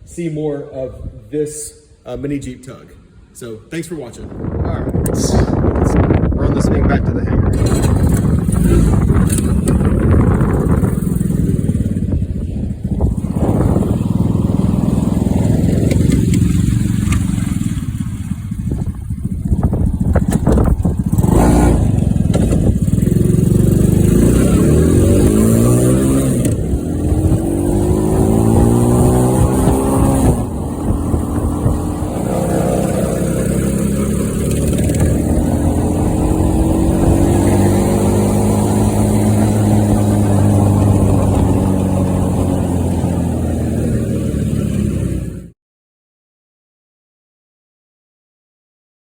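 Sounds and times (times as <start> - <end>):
small car engine running: 7.5 - 45.6.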